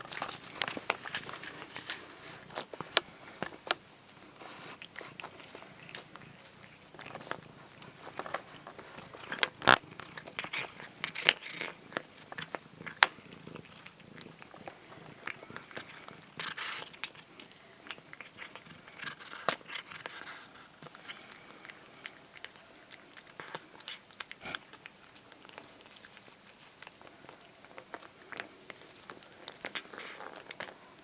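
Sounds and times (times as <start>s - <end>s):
cat gnawing chew stick: 0.0s - 31.0s.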